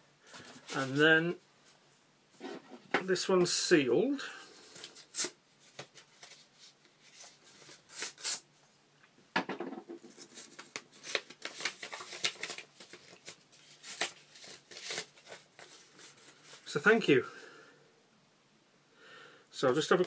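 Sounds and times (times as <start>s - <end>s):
paper envelope tearing and rustling: 4.6s - 8.4s, 10.1s - 16.7s.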